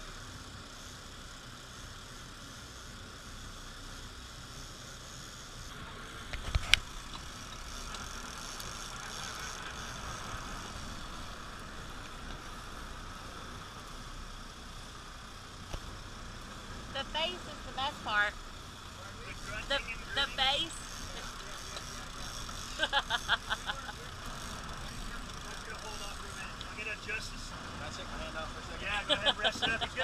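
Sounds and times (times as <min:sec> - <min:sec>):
boat engine running: 0:00.0 - 0:30.0.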